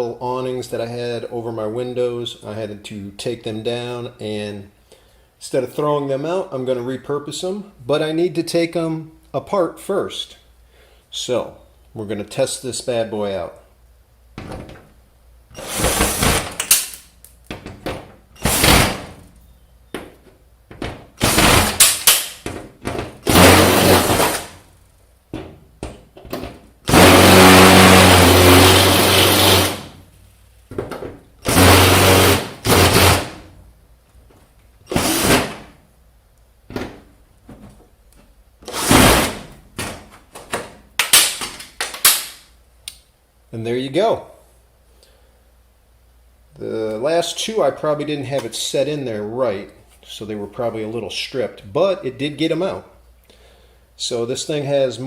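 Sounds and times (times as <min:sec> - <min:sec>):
cordless drill running in bursts: 0:15.6 - 0:16.6, 0:21.2 - 0:21.9, 0:23.2 - 0:24.6, 0:26.9 - 0:30.0, 0:31.5 - 0:33.4, 0:34.9 - 0:35.5.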